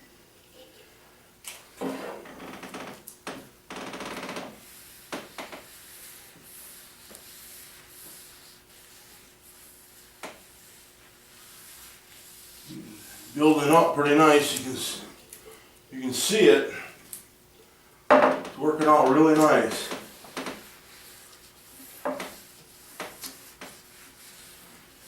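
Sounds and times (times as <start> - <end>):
applicator wiping on wood: 4.6 - 15.1, 18.6 - 25.0.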